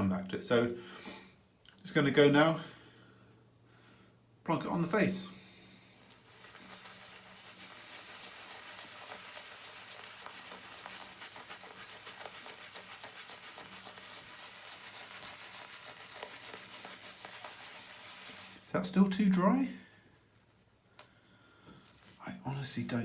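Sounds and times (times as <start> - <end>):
shaving brush swirling lather: 5.3 - 19.7.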